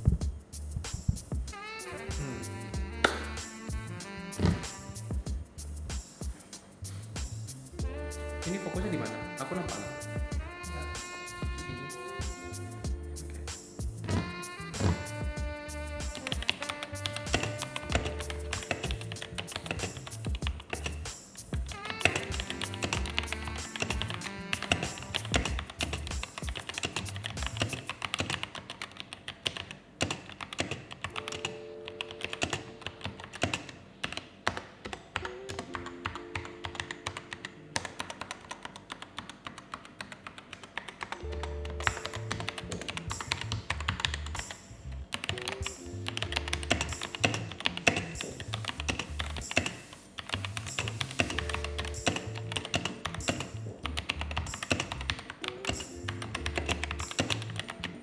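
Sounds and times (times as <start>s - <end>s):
background music with steady beat: 0.0s - 28.2s, 34.7s - 38.8s, 41.2s - 58.0s
mechanical keyboard typing: 16.2s - 21.0s, 21.9s - 58.0s.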